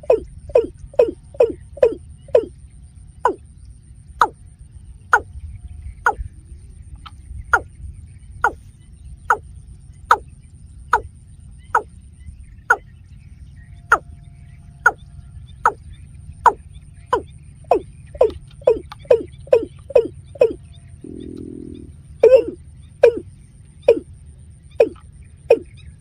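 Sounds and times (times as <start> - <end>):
bird calling short notes: 16.5 - 24.1.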